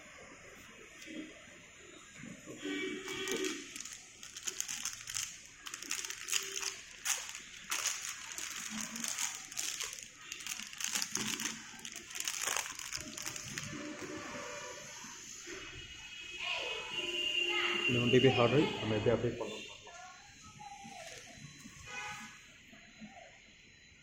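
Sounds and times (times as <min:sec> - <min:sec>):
plastic packaging crinkling: 0:02.9 - 0:14.4.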